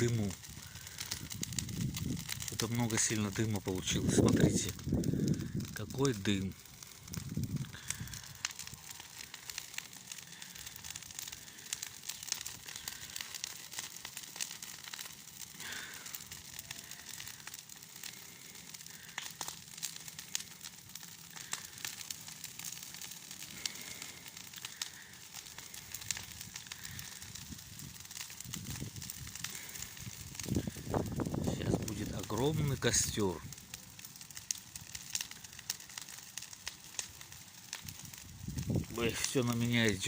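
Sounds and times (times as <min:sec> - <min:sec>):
bonfire crackling and popping: 0:00.0 - 0:40.0.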